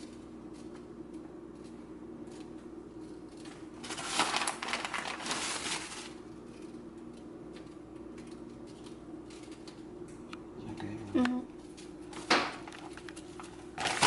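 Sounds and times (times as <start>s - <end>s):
packaging crinkling: 3.3s - 9.8s, 11.7s - 14.0s.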